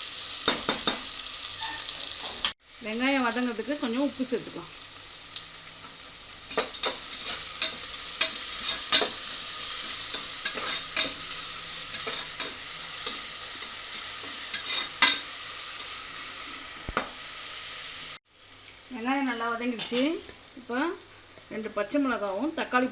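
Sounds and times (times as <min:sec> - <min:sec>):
onions sizzling in oil: 0:00.0 - 0:22.9
utensil scraping against pot: 0:01.6 - 0:02.5, 0:06.5 - 0:16.0.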